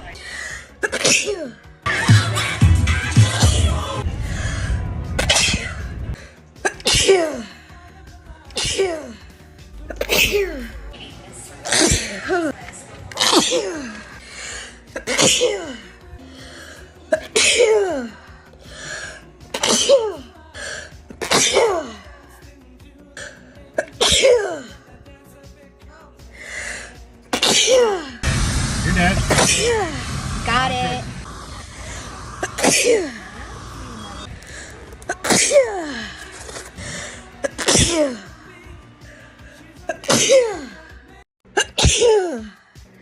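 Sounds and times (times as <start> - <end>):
woman sneezing: 0.8 - 1.6, 5.2 - 5.8, 6.6 - 7.5, 8.5 - 9.2, 9.9 - 10.7, 11.6 - 12.5, 13.2 - 14.0, 15.0 - 15.8, 17.1 - 18.1, 19.5 - 20.2, 21.2 - 22.0, 23.8 - 24.7, 27.3 - 28.2, 32.4 - 33.3, 35.1 - 36.1, 37.4 - 38.2, 39.9 - 40.8, 41.6 - 42.6.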